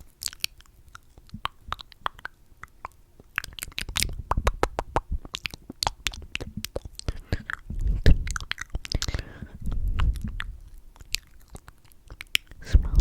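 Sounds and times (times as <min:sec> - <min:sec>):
wet lip smacks and clicks: 0:00.0 - 0:13.0
dull low thumps: 0:09.4 - 0:10.6.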